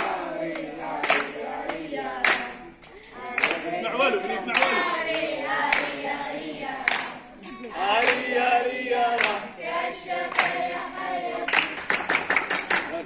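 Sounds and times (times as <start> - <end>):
hand claps: 0.0 - 2.6, 3.4 - 3.7, 4.4 - 6.0, 6.8 - 8.4, 9.1 - 9.5, 10.3 - 10.7, 11.4 - 13.0
children chanting in unison: 0.0 - 11.8.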